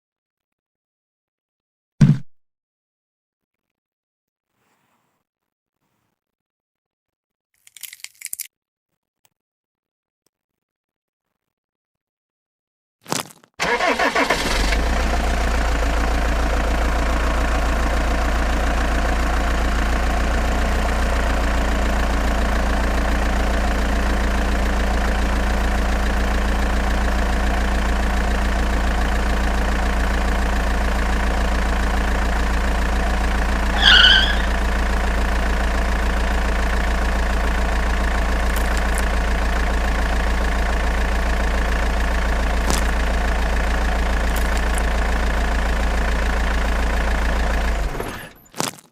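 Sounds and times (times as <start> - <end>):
engine idling: 13.6 - 48.4
brief high chirp: 33.8 - 34.5.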